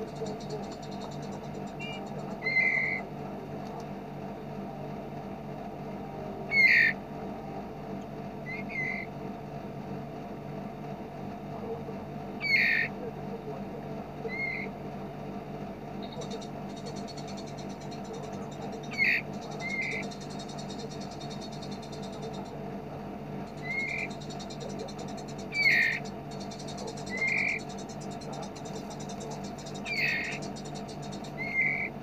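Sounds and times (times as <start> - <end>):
bird rattling trill: 0.0 - 3.0, 16.0 - 22.6, 23.4 - 32.0
songbird chirps: 0.0 - 9.6, 15.8 - 32.0
steady low hum: 0.0 - 32.0.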